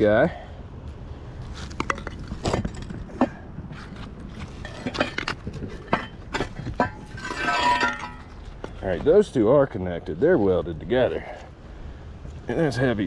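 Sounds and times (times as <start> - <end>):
scrap metal clinking and knocking: 1.7 - 8.8.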